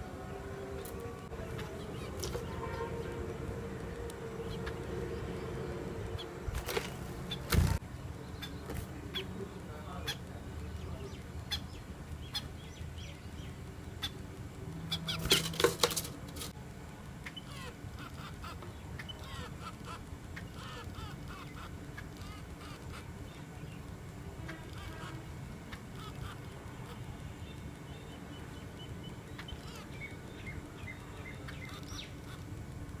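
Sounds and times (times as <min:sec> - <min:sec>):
sparrows chirping: 0:00.0 - 0:03.6, 0:04.3 - 0:16.6, 0:17.3 - 0:32.5
low background noise: 0:00.0 - 0:33.0
loud rustling bursts: 0:06.5 - 0:07.8.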